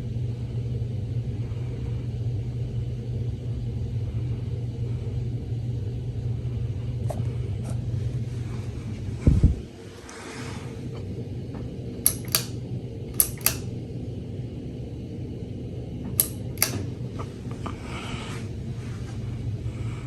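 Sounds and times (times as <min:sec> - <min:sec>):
ceiling fan motor humming: 0:06.0 - 0:20.0
pullchain switch clicking: 0:12.0 - 0:12.6, 0:13.2 - 0:13.7, 0:16.2 - 0:17.0.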